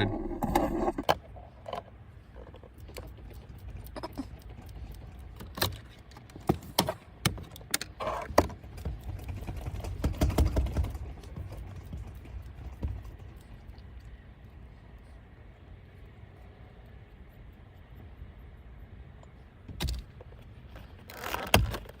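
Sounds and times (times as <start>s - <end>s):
mounting tape crinkling: 20.7s - 22.0s.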